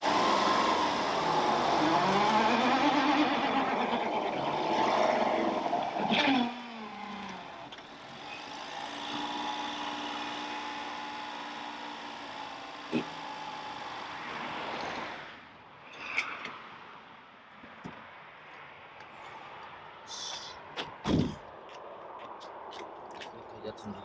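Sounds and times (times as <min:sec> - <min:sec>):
car engine revving: 0:00.0 - 0:14.7.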